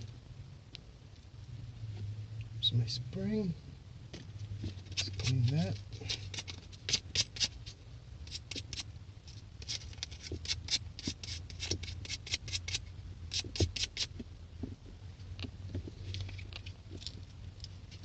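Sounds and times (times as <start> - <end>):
faint steady hum: 0.0 - 18.0
scratchy scrubbing of small spring: 4.7 - 7.7.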